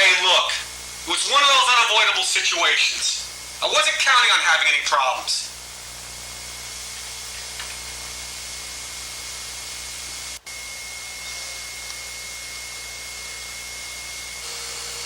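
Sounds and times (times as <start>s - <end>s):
thin high whine: 0.0s - 15.0s.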